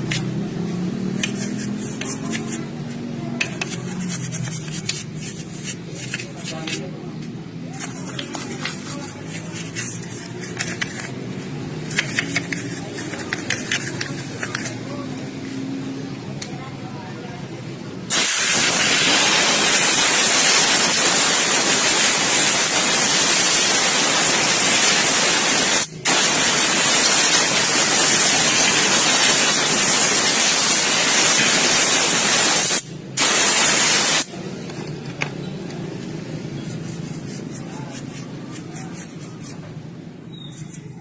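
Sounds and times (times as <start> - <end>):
spray or air jet hissing: 18.1 - 34.3.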